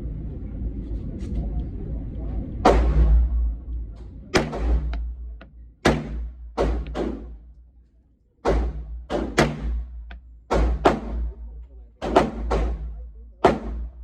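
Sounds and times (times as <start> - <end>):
loud gunshots with echo: 2.6 - 3.5, 4.3 - 7.4, 8.4 - 14.0.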